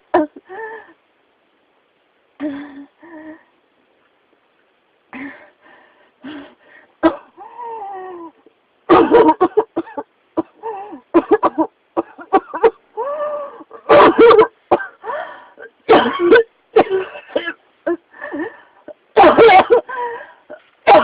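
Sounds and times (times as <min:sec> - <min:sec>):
person coughing: 0:07.0 - 0:07.4, 0:08.9 - 0:10.6, 0:13.8 - 0:15.0, 0:15.9 - 0:18.0, 0:19.2 - 0:19.9, 0:20.5 - 0:21.0.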